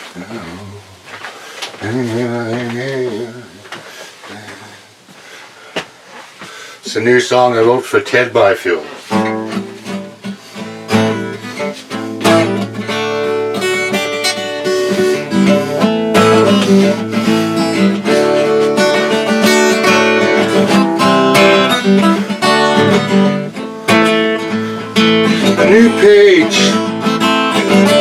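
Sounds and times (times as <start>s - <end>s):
acoustic guitar strumming chords: 6.9s - 28.0s.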